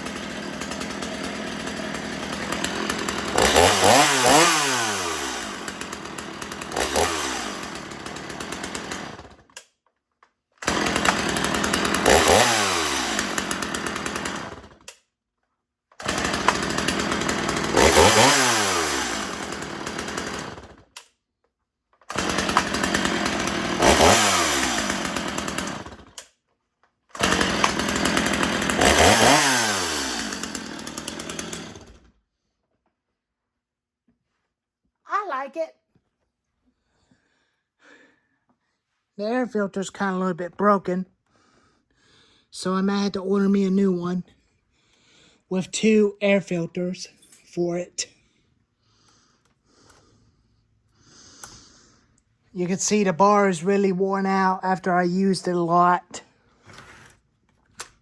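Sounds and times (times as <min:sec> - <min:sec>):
chainsaw revving: 0:00.0 - 0:09.6, 0:10.6 - 0:14.9, 0:16.0 - 0:21.0, 0:22.1 - 0:26.3, 0:27.2 - 0:32.1, 0:51.0 - 0:52.0, 0:52.6 - 0:57.1.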